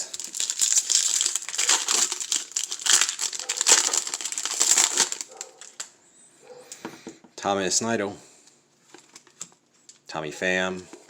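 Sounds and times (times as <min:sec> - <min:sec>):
wrapper crinkling being torn open: 0:00.0 - 0:05.9.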